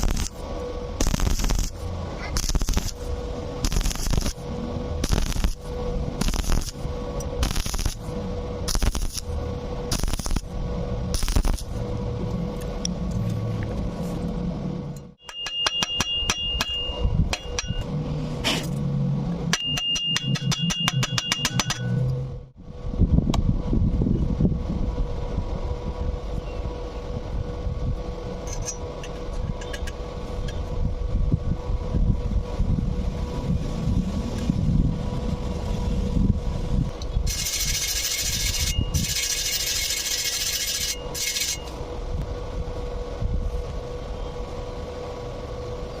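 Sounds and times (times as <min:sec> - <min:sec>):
welding arc crackling: 0:00.0 - 0:11.9, 0:37.3 - 0:41.7
electrical hum: 0:00.0 - 0:19.6
rough scraping and rubbing: 0:37.3 - 0:41.8.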